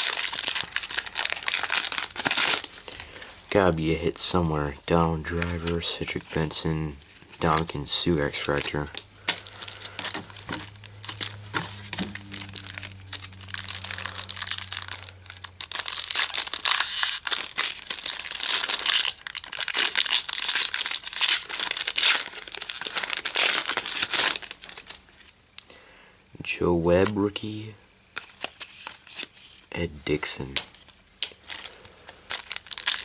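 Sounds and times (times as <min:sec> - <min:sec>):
foil wrapper crinkling and tearing: 0:00.0 - 0:03.3, 0:05.2 - 0:25.4, 0:28.1 - 0:29.7, 0:30.7 - 0:33.0.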